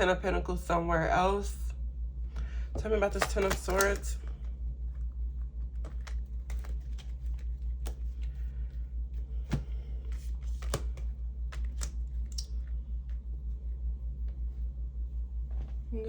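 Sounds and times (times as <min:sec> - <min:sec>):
pulsing low hum: 0:00.0 - 0:16.0
cards clicking and tapping: 0:03.1 - 0:04.4, 0:05.7 - 0:08.4, 0:09.3 - 0:12.0
card snapping: 0:05.8 - 0:08.2, 0:09.4 - 0:12.5.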